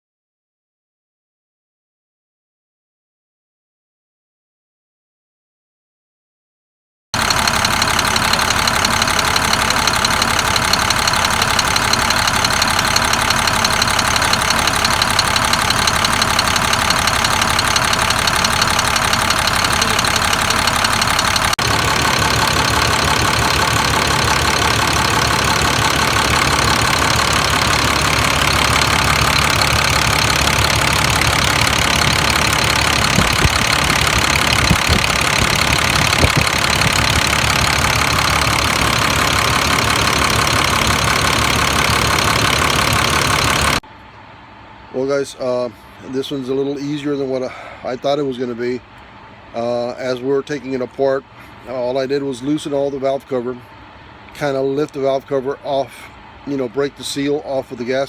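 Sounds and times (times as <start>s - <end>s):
diesel bus engine idling: 7.2s - 58.0s.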